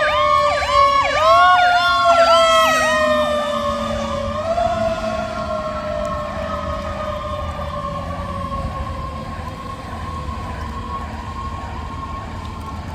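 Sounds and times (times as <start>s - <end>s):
fire engine siren: 0.0s - 12.9s
low rumble: 2.8s - 12.9s.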